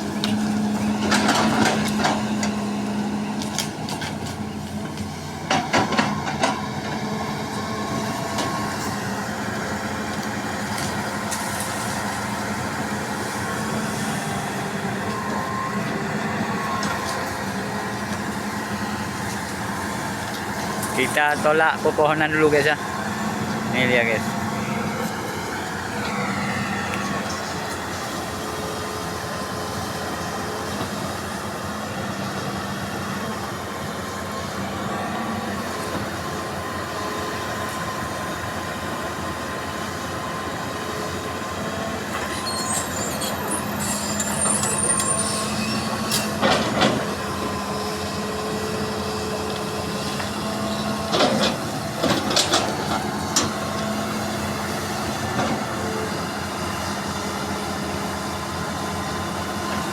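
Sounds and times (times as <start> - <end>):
excavator diesel engine running: 0.0 - 59.9
high metallic squealing: 42.2 - 46.3.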